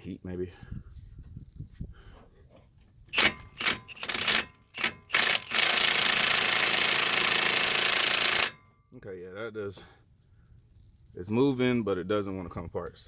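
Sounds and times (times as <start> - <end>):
impact wrench hammering on bolt: 3.1 - 8.7.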